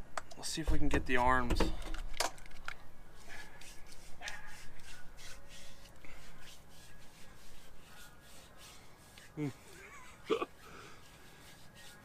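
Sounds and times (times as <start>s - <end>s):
hands rubbing cream on skin: 3.2s - 12.0s.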